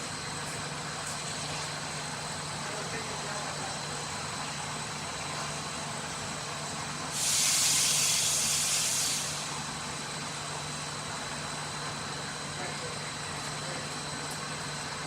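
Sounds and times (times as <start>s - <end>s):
loud hiss: 7.1s - 9.7s.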